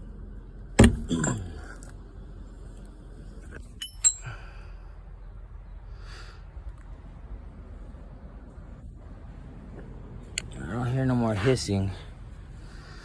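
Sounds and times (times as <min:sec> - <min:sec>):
ringing metal knock: 0:00.8 - 0:01.4, 0:03.8 - 0:04.2
metal tool clinking: 0:00.8 - 0:01.6, 0:03.6 - 0:04.4.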